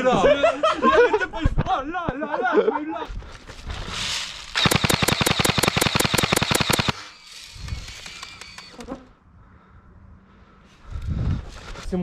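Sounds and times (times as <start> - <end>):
airsoft gun firing: 4.6 - 7.1.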